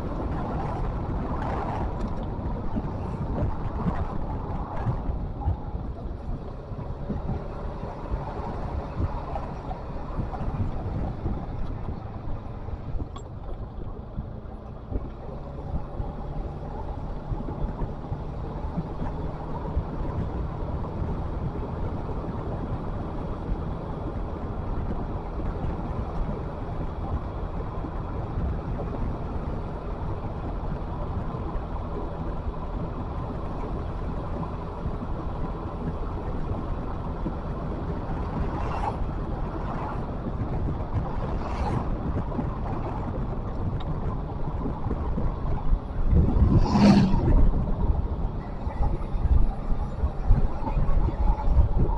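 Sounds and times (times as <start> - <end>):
motor running low rumble: 0.0 - 51.9
wind noise: 0.0 - 51.9.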